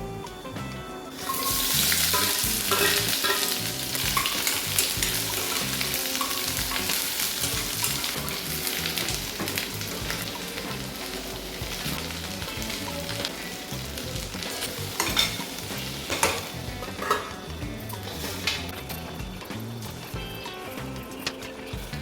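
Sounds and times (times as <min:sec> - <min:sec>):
food sizzling in hot oil: 0:01.0 - 0:22.0
spoon stirring in a pan: 0:01.2 - 0:10.8, 0:14.4 - 0:17.4.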